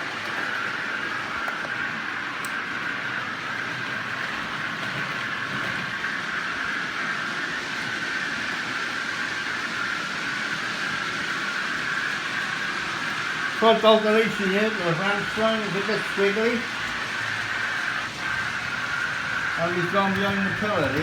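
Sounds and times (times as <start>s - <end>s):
model trains running on track: 0.0s - 21.0s
high hum: 10.6s - 21.0s.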